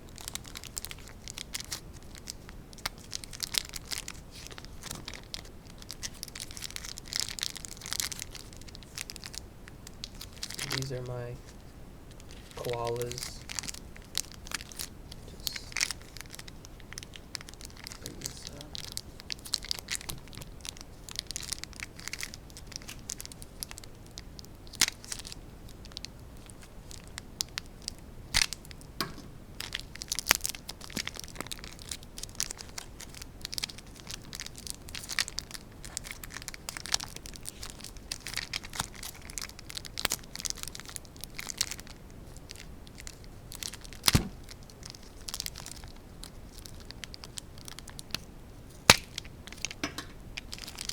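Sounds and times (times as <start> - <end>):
packaging crinkling and tearing: 0.1 - 50.9
clicks and taps: 29.0 - 29.4, 49.8 - 50.2
loud knock: 29.0 - 29.4.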